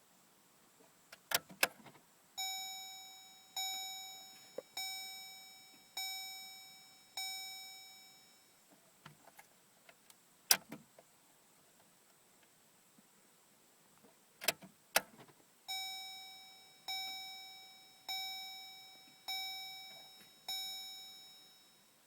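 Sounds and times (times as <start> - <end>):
dashboard warning chime dinging: 2.4 - 8.6, 15.7 - 22.0.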